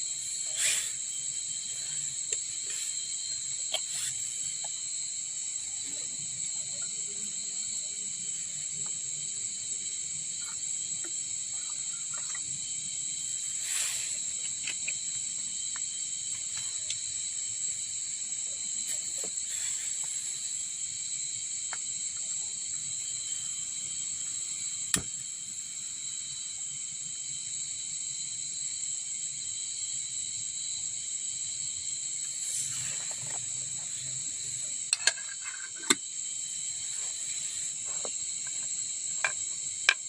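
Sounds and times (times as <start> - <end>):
high-pitched insect chorus: 0.0 - 40.0.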